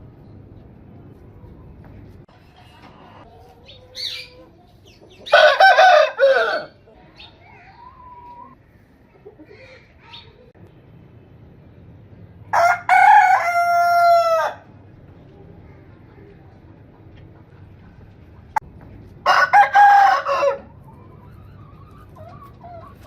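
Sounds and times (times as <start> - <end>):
rooster crowing: 5.3 - 6.8, 12.5 - 14.7, 19.2 - 20.7.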